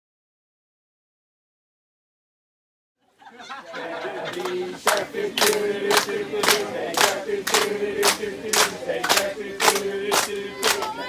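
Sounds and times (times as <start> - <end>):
group chanting in unison: 3.4 - 11.0.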